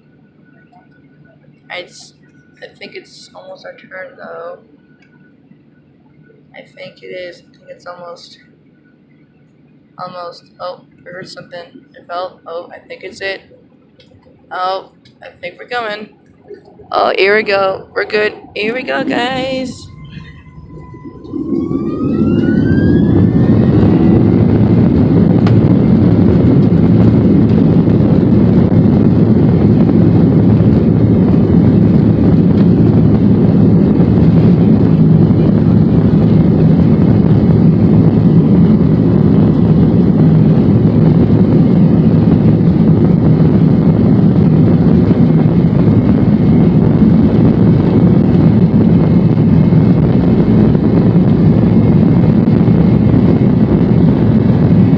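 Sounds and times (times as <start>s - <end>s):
jet engine roar from cabin: 16.1s - 54.9s.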